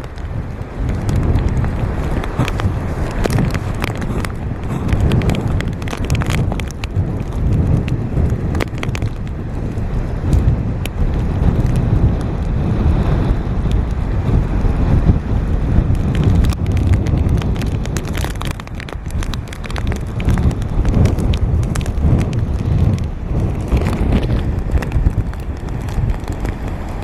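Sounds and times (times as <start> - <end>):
wind buffeting microphone: 0.0 - 27.0.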